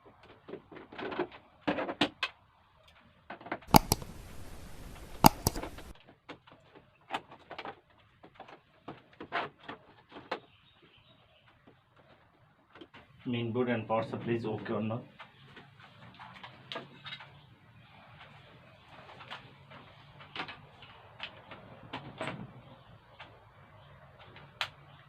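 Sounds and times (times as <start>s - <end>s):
sharp clicks: 3.7s - 6.0s
tools clicking and tapping: 3.7s - 6.0s.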